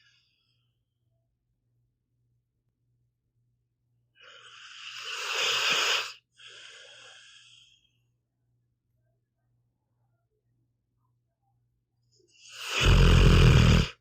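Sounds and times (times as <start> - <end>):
dog snoring: 4.2 - 6.2, 12.5 - 14.0.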